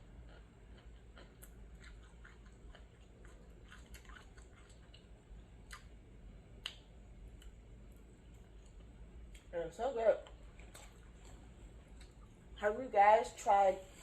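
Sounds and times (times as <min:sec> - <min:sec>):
chewing mouth clicks and smacks: 0:00.2 - 0:05.9, 0:06.6 - 0:07.6, 0:10.2 - 0:12.4.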